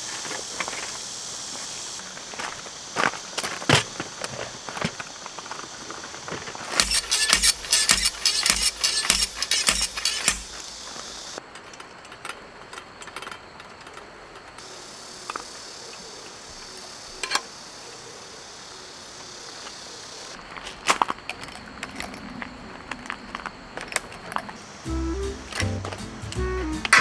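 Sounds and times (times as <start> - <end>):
single click: 6.8 - 10.6.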